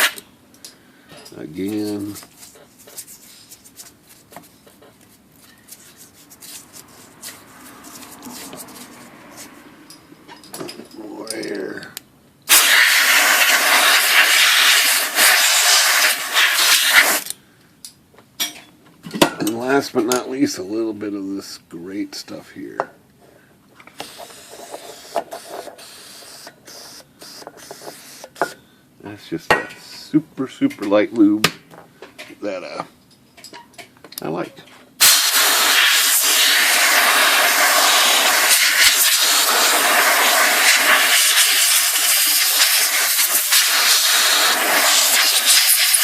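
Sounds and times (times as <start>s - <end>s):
compressed air hissing puffs: 12.5s - 17.3s, 23.9s - 28.6s, 35.0s - 46.0s.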